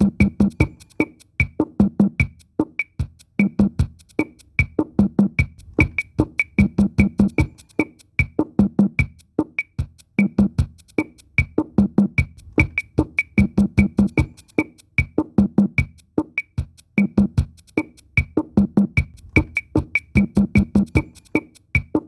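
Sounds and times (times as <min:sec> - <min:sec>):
fast rhythmic drumming: 0:00.0 - 0:22.0.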